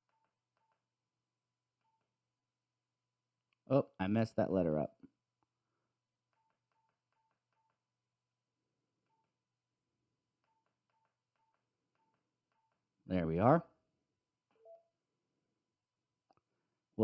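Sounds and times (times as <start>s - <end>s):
faint keypad beeps: 1.8s - 2.1s, 9.0s - 9.4s, 10.4s - 12.9s, 14.5s - 15.0s.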